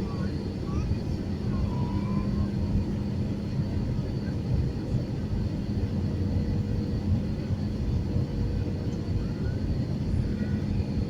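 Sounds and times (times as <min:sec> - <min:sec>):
jet engine rumble: 0:00.0 - 0:11.0.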